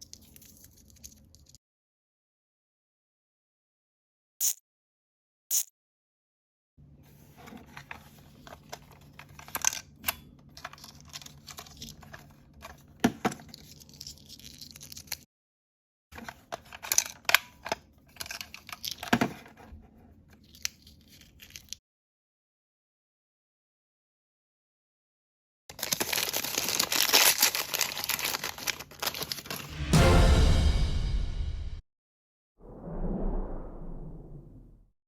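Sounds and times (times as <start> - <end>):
plastic packaging tearing and rustling: 25.7 - 29.7.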